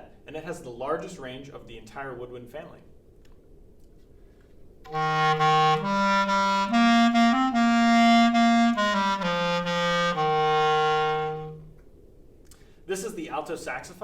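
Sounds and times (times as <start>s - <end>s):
low clarinet phrase: 4.9s - 11.8s.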